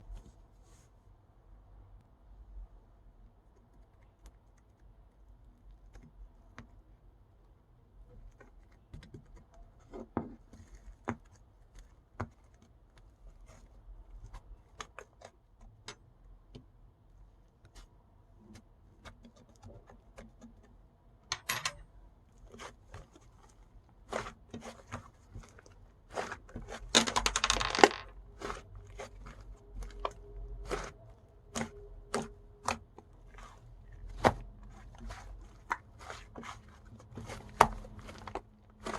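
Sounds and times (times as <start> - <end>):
slime crackling: 28.3 - 38.9.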